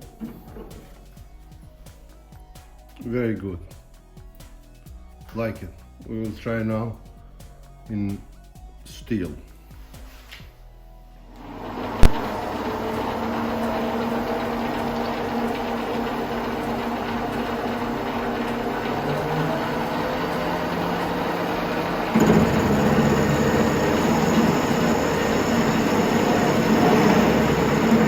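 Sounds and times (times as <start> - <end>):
lathe motor and gear whine: 11.4 - 28.0.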